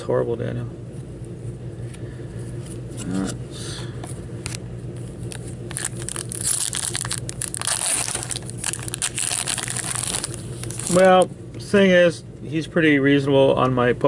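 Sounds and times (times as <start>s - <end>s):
steady low hum: 0.0s - 14.0s
card packs crackling and crinkling: 4.5s - 11.3s
cards scraping: 5.2s - 11.3s.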